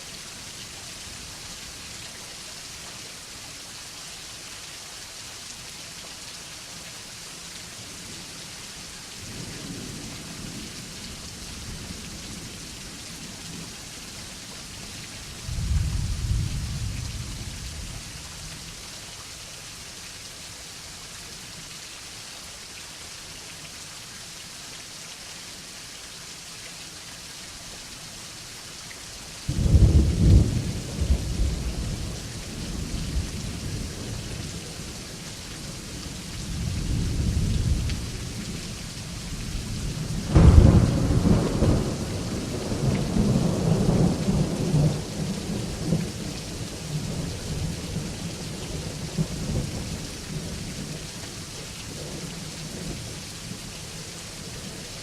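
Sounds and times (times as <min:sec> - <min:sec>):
steady rain by a window: 0:00.0 - 0:55.0
thunder clap rumbling: 0:40.3 - 0:45.0.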